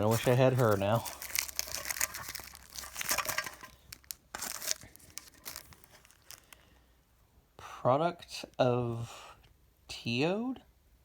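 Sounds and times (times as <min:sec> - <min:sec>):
packaging crinkling and tearing: 0:00.0 - 0:06.6.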